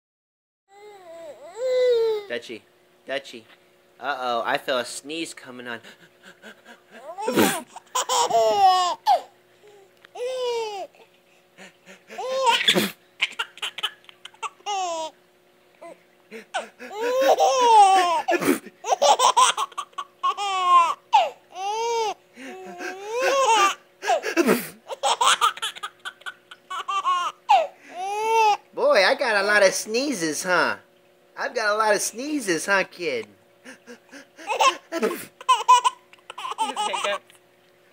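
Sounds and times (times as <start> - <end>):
baby laughing and squealing: 6.9 - 11.0, 11.9 - 15.2, 15.8 - 28.6, 34.1 - 37.2
man sneezing loudly: 7.3 - 7.7, 12.6 - 13.0, 18.3 - 18.7, 24.3 - 24.8, 34.9 - 35.4.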